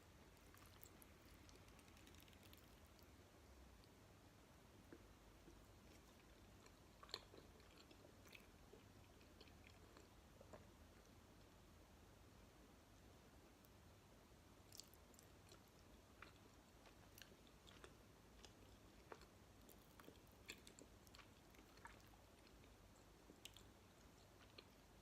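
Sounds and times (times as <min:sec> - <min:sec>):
chewing gummy candy: 0:00.4 - 0:03.1, 0:05.5 - 0:10.7, 0:14.7 - 0:25.0
wet mouth clicks and smacks: 0:00.6 - 0:03.0.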